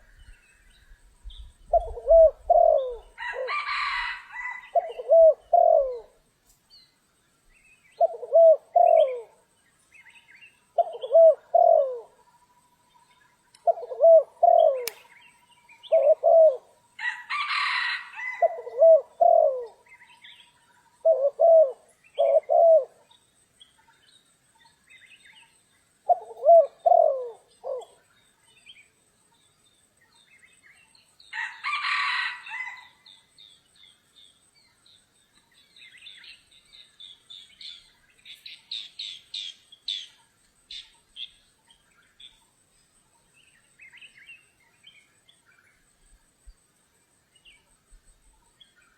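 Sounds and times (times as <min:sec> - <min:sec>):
dove cooing: 0:01.7 - 0:06.2, 0:08.0 - 0:09.4, 0:10.8 - 0:12.2, 0:13.6 - 0:15.1, 0:15.7 - 0:20.0, 0:21.0 - 0:23.1, 0:26.1 - 0:28.0.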